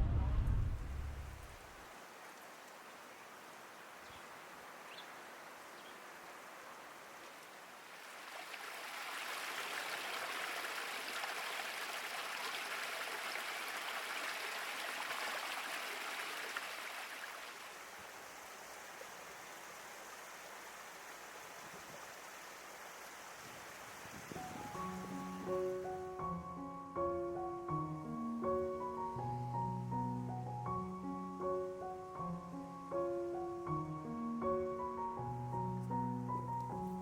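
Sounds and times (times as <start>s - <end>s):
running water rushing hiss: 0.8s - 26.3s.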